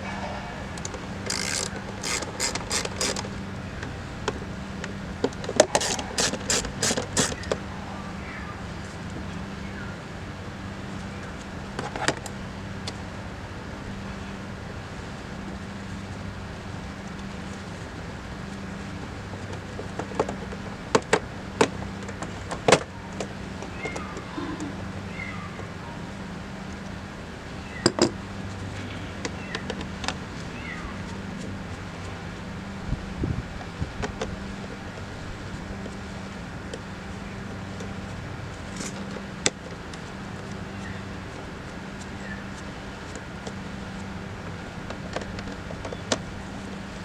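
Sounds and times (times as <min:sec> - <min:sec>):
low hum: 0:00.0 - 0:05.2
sharp mechanical clicks: 0:00.9 - 0:03.3, 0:05.6 - 0:07.6.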